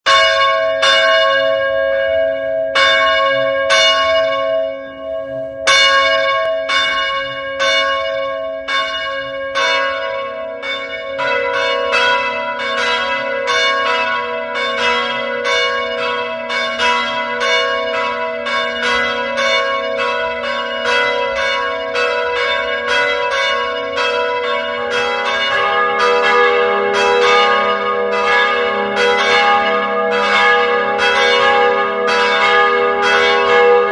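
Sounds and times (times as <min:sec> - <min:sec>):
church bells pealing: 0:00.0 - 0:33.9
deep bell ringing: 0:00.1 - 0:33.9.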